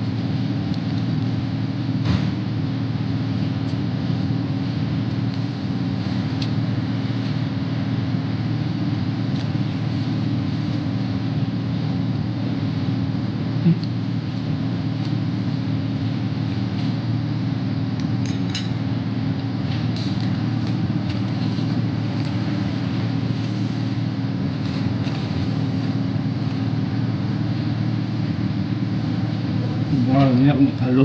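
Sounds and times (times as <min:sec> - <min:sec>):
low background hum: 0:00.0 - 0:31.0
tableware clinking: 0:18.3 - 0:18.8.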